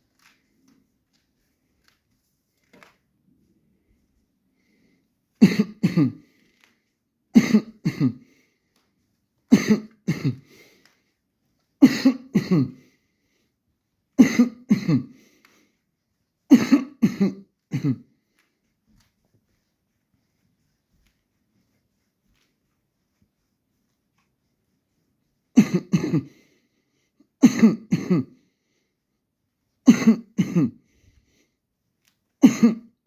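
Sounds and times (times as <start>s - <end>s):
person coughing: 5.4s - 6.4s, 7.3s - 8.4s, 9.5s - 10.8s, 11.8s - 13.0s, 14.2s - 15.4s, 16.5s - 18.1s, 25.6s - 26.5s, 27.4s - 28.4s, 29.8s - 30.9s, 32.4s - 33.0s.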